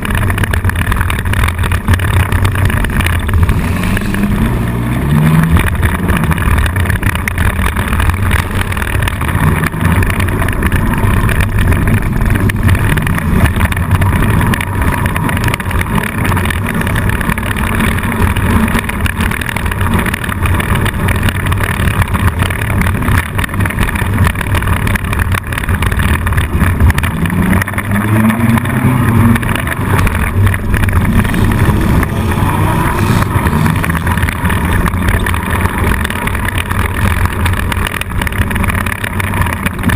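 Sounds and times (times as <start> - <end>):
car engine running hard: 0.0 - 39.9.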